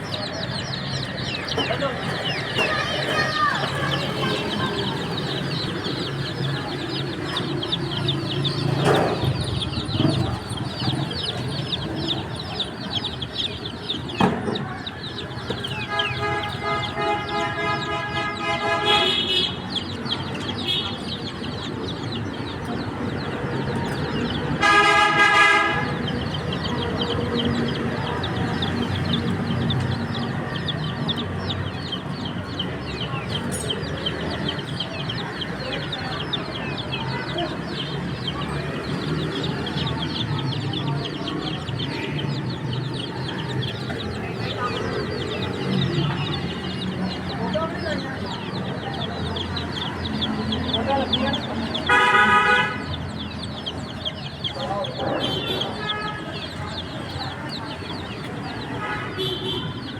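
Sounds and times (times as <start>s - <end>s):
baby chicks peeping: 0.0s - 59.9s
vehicle horn: 15.9s - 19.6s, 24.6s - 26.0s, 51.9s - 52.9s.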